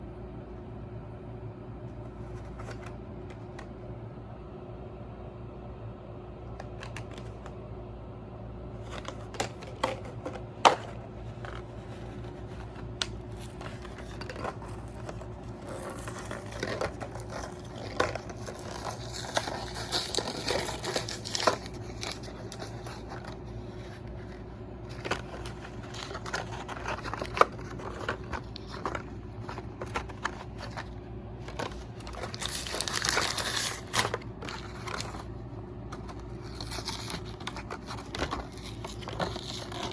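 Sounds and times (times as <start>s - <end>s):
packaging crinkling: 8.8s - 39.9s.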